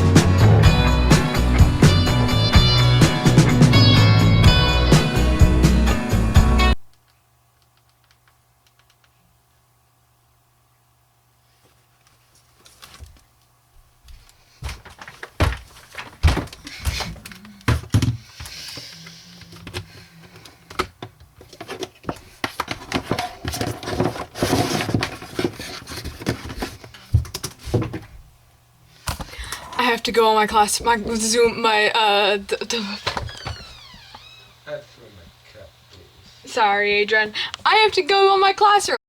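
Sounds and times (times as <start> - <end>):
faint steady hum: 6.7 - 39.0
objects knocking and rustling: 14.1 - 28.3.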